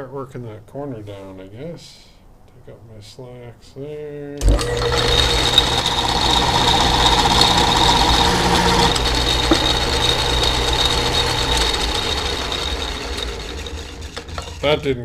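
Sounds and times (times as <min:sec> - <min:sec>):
machine motor hum: 0:04.4 - 0:14.8
high grinding whine: 0:04.4 - 0:14.9.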